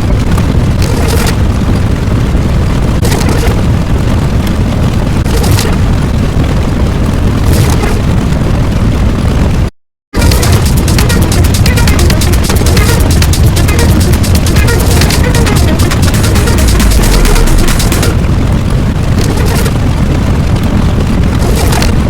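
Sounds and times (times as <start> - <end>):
loud low rumble: 10.2 - 22.0.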